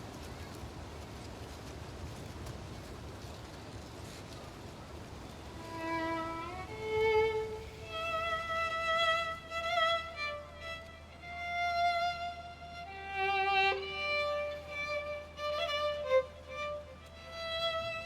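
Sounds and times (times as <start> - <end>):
solo violin slow melody: 5.1 - 18.0.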